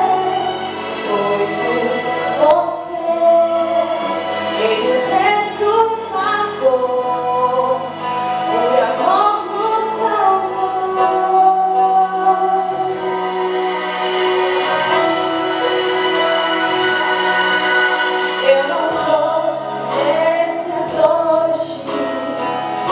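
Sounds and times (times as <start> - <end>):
female voice singing: 0.0 - 12.8, 17.7 - 22.9
music: 0.0 - 22.9
voices singing: 0.0 - 22.9.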